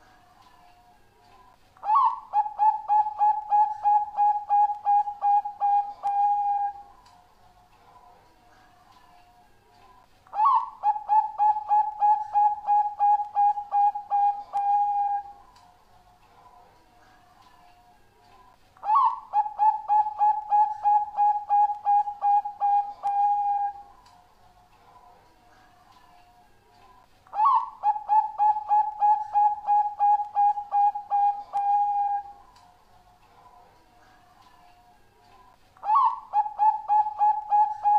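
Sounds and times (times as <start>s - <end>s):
dove cooing: 1.8s - 6.9s, 10.3s - 15.4s, 18.8s - 23.9s, 27.3s - 32.5s, 35.8s - 37.9s.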